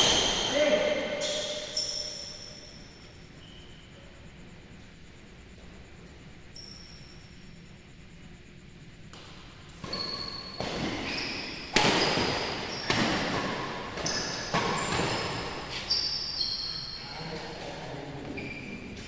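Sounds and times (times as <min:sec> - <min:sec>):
shoe squeaks: 0:00.0 - 0:04.1, 0:06.5 - 0:07.6, 0:09.8 - 0:17.7, 0:18.3 - 0:19.0
racket hitting shuttlecock: 0:09.1 - 0:15.8.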